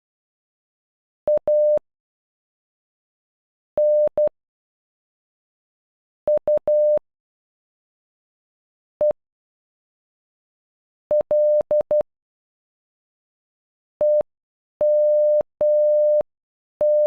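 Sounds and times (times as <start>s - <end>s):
morse code beeps: 1.3s - 1.8s, 3.8s - 4.3s, 6.3s - 7.0s, 14.0s - 16.2s.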